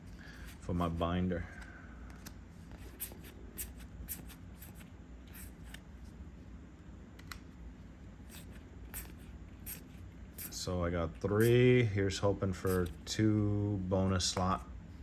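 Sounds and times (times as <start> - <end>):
trading cards flipped by hand: 2.1 - 6.0, 7.1 - 7.6.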